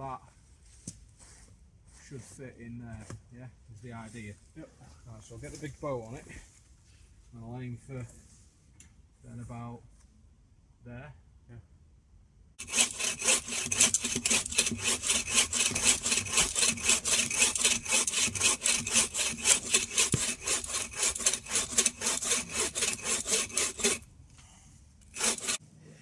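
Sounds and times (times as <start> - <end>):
bow saw cutting log: 12.6 - 25.6.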